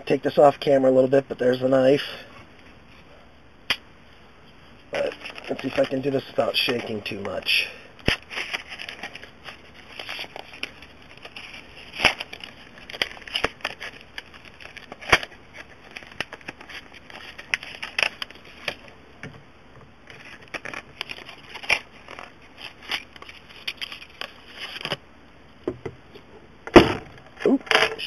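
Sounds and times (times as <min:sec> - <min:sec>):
plastic crackling and snapping: 0:04.9 - 0:25.0, 0:26.7 - 0:28.0
knife cutting plastic packaging: 0:08.0 - 0:18.8.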